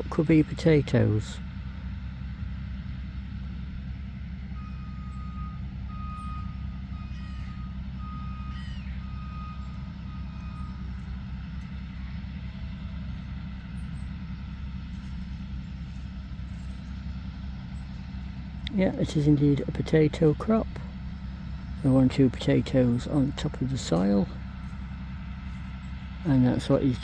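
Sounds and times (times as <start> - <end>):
low rumble of machinery: 0.0 - 27.0
reversing alarm beeps: 4.6 - 11.8.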